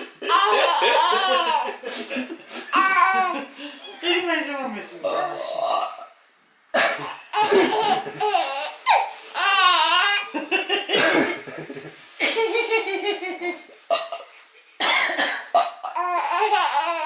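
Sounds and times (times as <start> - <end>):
baby laughing: 0.0 - 2.0, 2.6 - 3.5, 7.0 - 14.4, 15.6 - 17.0.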